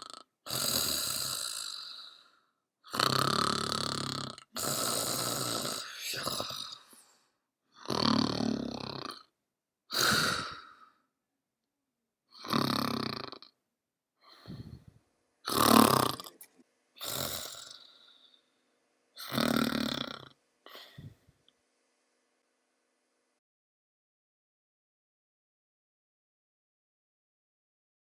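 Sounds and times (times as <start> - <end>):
person snoring: 0.0 - 9.3, 9.9 - 11.1, 12.3 - 13.6, 14.2 - 14.9, 15.5 - 18.5, 19.2 - 21.2.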